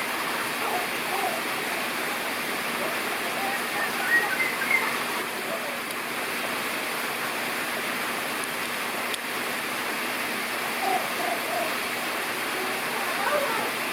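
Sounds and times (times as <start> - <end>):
running water: 0.0 - 13.9
bird chirps: 3.4 - 5.0.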